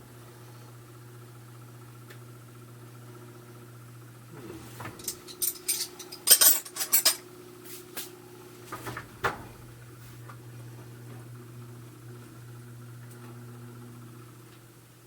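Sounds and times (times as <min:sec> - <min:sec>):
low machinery hum: 0:00.0 - 0:15.0
hard objects clinking: 0:05.0 - 0:07.2.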